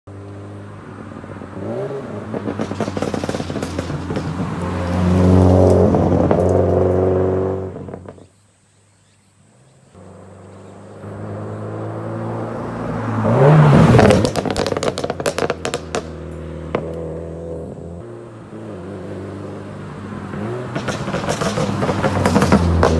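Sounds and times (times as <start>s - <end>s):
car engine revving: 0.1s - 8.3s, 10.0s - 22.9s
exhaust popping and crackling: 1.6s - 8.3s, 10.0s - 18.1s, 20.0s - 22.9s.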